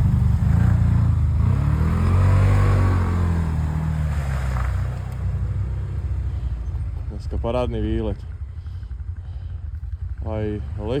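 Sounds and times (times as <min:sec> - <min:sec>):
atv engine revving: 0:00.0 - 0:11.0.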